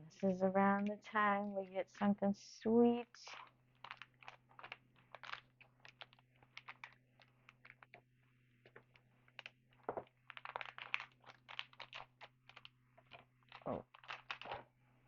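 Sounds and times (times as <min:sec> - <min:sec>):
cards clicking and rustling: 0:03.8 - 0:14.6.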